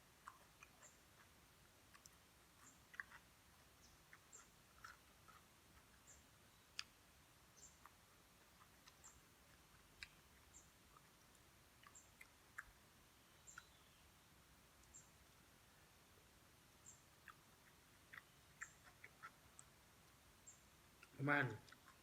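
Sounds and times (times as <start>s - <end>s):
person chewing: 0.0s - 13.8s, 17.0s - 22.0s
small high chirp: 11.8s - 14.2s, 14.8s - 15.3s.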